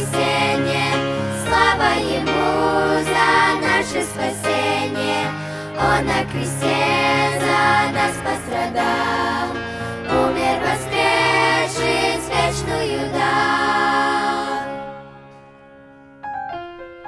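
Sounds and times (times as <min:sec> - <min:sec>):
choir singing: 0:00.0 - 0:15.3
instrumental backing: 0:05.8 - 0:17.0.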